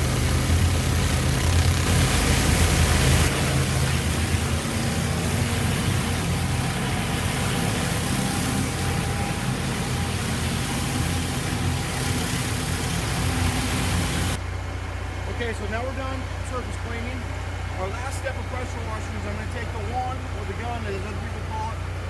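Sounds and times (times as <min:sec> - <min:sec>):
high-pressure water spray hissing: 0:00.0 - 0:14.4
pressure washer engine running: 0:00.0 - 0:22.0.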